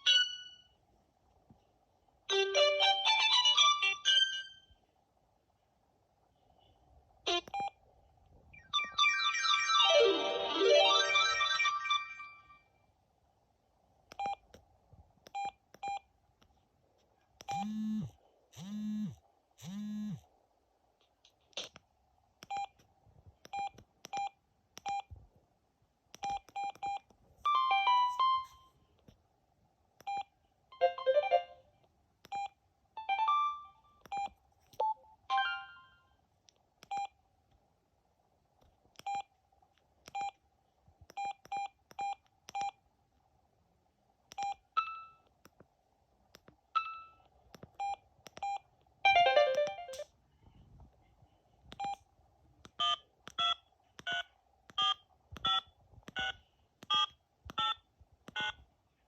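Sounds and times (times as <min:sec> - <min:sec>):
phone keypad beeps: 0:52.8 - 0:58.6.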